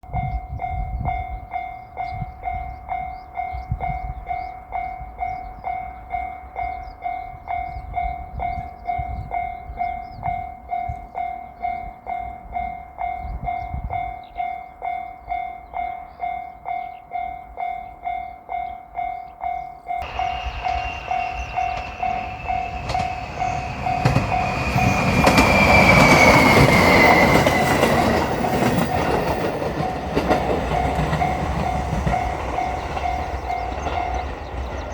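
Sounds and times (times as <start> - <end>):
level-crossing warning bell: 0.0 - 34.9
electric train passing: 0.1 - 34.9
high whine gliding down: 20.0 - 28.5.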